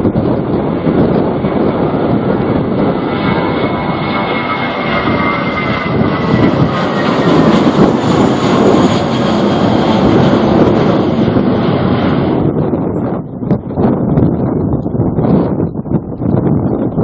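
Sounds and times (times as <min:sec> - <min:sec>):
jet airliner engines passing: 0:00.0 - 0:14.5
wind gusting on microphone: 0:00.0 - 0:17.0.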